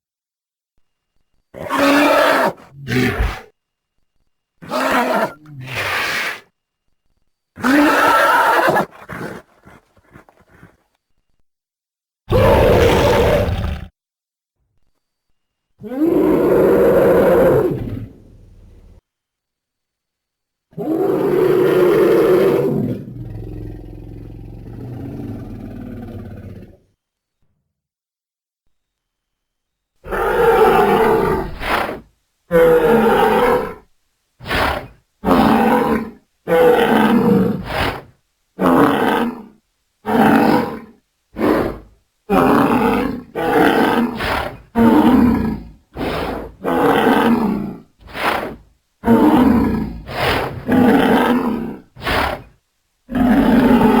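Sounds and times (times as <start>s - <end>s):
dinosaur roars: 1.6s - 3.5s, 7.6s - 10.8s, 12.3s - 13.9s, 15.8s - 19.0s, 20.7s - 26.9s, 30.0s - 33.8s, 34.4s - 52.5s, 53.1s - 54.0s.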